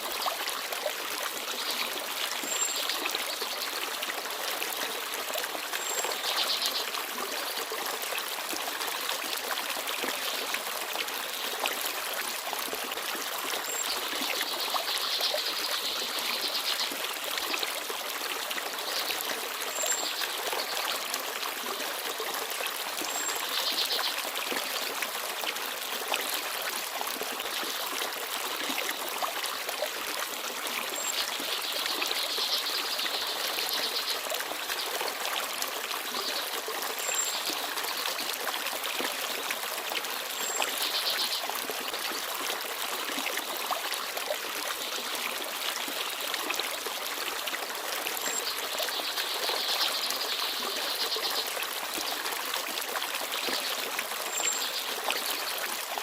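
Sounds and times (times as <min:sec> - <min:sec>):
stream babbling: 0:00.0 - 0:56.0.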